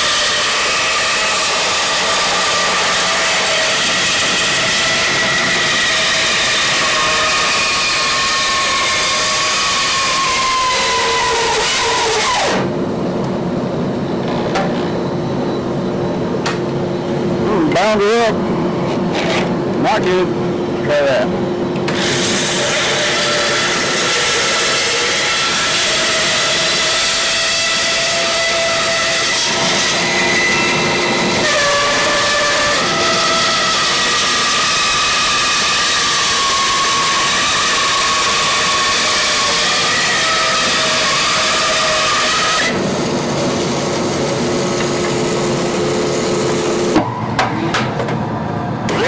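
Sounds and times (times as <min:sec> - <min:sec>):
bandsaw cutting wood: 0:00.0 - 0:12.7, 0:21.9 - 0:47.0
steady hum: 0:12.6 - 0:21.9.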